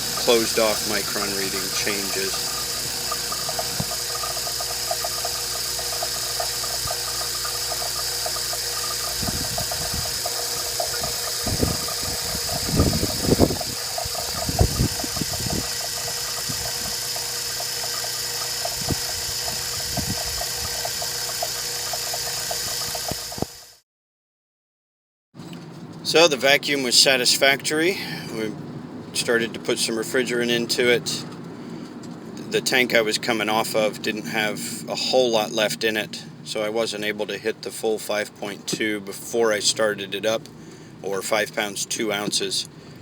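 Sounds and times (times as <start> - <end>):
vacuum pump running: 0.0 - 23.8.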